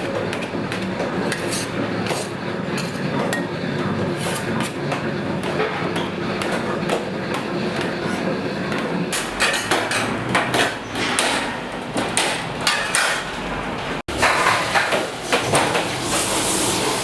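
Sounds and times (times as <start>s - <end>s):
utensils and cookware clinking: 0.0s - 17.0s.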